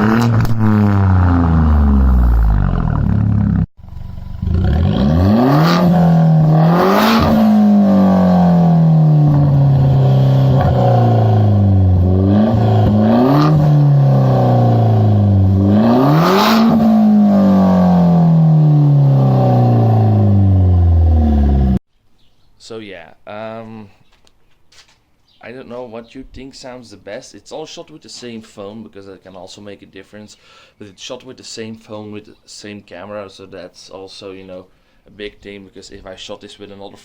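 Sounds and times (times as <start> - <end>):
car engine revving: 0.0 - 21.8.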